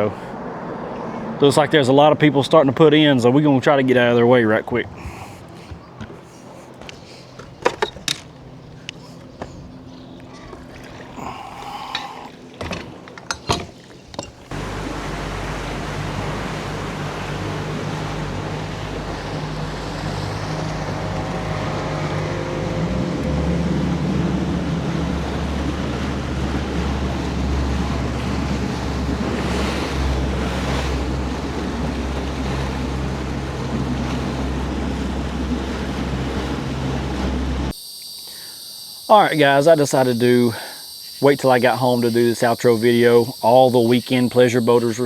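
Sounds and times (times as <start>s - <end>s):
water rushing: 0.0s - 37.8s, 39.0s - 45.0s
boat motor running: 0.0s - 45.0s
wind buffeting microphone: 14.0s - 37.7s.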